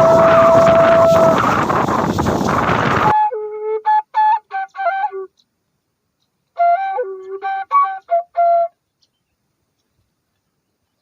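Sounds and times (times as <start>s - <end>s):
solo flute melody: 0.0s - 5.4s, 6.5s - 8.8s.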